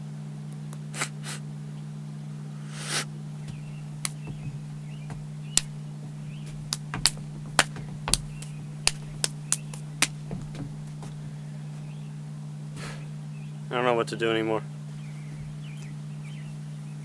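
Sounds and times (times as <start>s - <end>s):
steady low hum: 0.0s - 17.0s
sharp clicks and taps: 6.4s - 11.2s.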